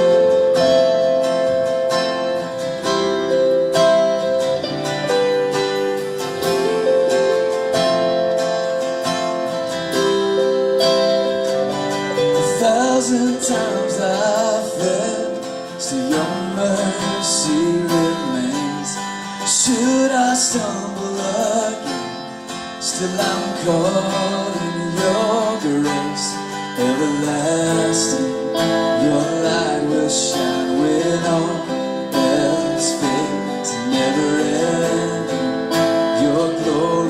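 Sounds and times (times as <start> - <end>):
wavering melody line: 0.0 - 17.6
acoustic guitar picking: 0.0 - 37.0.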